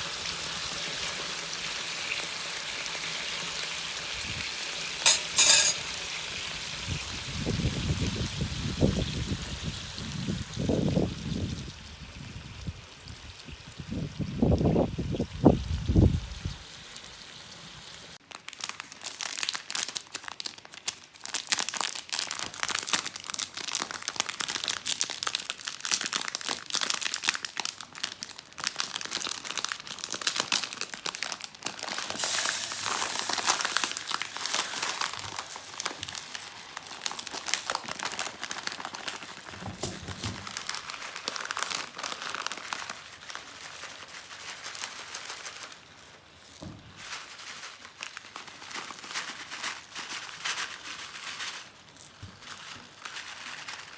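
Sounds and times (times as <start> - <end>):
meat sizzling in oil: 0.0 - 18.2, 32.1 - 36.7.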